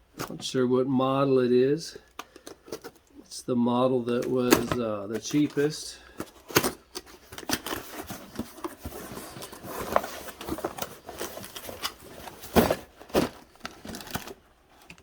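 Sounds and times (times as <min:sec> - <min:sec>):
cardboard rustling and scraping: 0:04.1 - 0:15.0.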